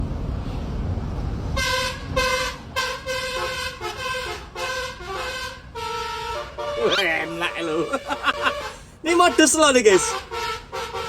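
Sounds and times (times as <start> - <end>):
multi-tone horn playing a tune: 10.0 - 11.0.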